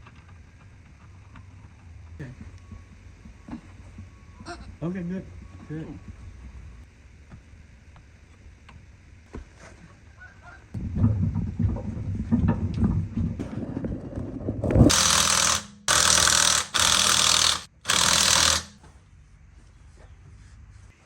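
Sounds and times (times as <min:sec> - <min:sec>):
rattling and knocking: 0:10.8 - 0:18.7
power tool running in bursts: 0:14.9 - 0:18.8.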